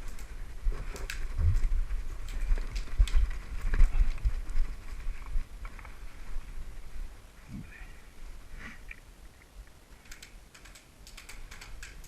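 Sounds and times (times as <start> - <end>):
gear clicking and rattling: 0.0 - 6.0, 10.0 - 12.0.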